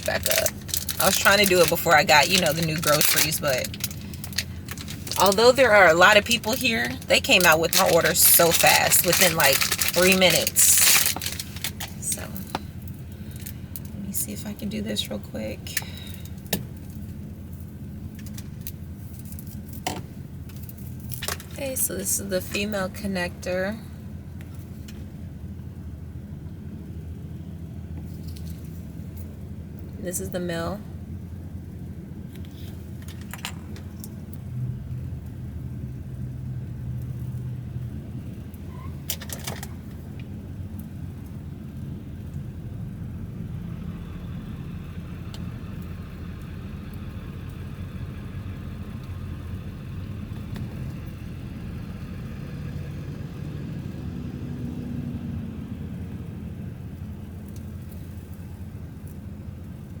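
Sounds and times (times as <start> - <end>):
vehicle engine idling: 0.0 - 23.0.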